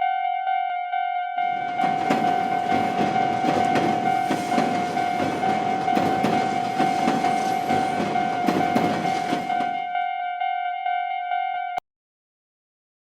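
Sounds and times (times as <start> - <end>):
railroad crossing bell ringing: 0.0 - 11.8
train rumbling: 1.4 - 10.0
train wheels clacking: 1.5 - 10.0.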